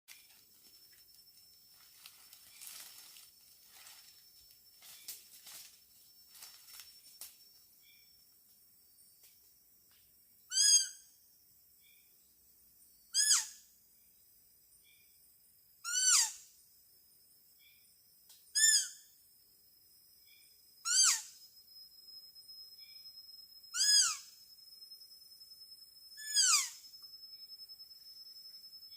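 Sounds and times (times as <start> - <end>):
deer call squealing cries: 10.5 - 11.0, 13.2 - 13.6, 15.9 - 16.4, 20.9 - 21.3, 23.8 - 24.3, 26.2 - 26.9.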